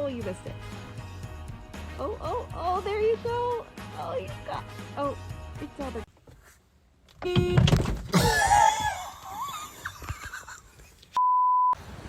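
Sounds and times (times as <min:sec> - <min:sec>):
censor bleep: 0:11.2 - 0:11.8.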